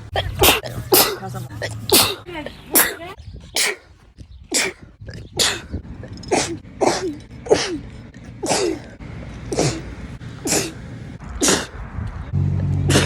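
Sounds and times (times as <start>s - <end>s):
person sneezing: 0.2s - 3.9s, 4.5s - 4.8s, 9.6s - 9.9s, 10.5s - 10.8s.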